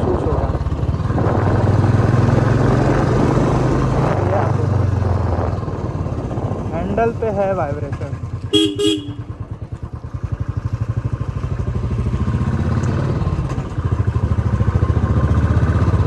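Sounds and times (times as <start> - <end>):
motorcycle engine thumping: 7.8 - 10.2.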